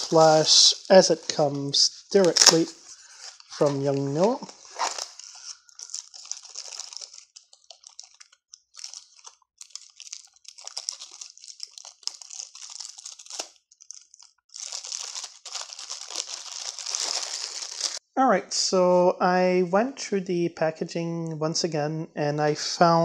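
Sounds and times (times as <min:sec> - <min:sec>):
plastic packaging crinkling: 0:00.0 - 0:18.0.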